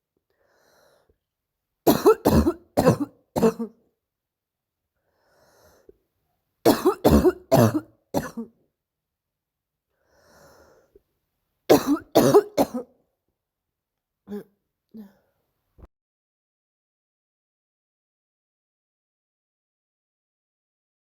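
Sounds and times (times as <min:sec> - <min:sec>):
faint breaths: 0:00.3 - 0:01.2, 0:05.0 - 0:06.0, 0:09.9 - 0:11.1
girl's barking cough: 0:01.9 - 0:03.8, 0:06.7 - 0:08.6, 0:11.7 - 0:12.9.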